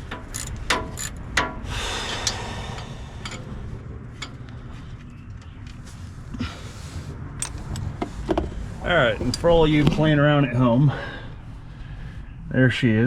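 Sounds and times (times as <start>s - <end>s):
ratchet wrench clicking: 0.0s - 1.5s.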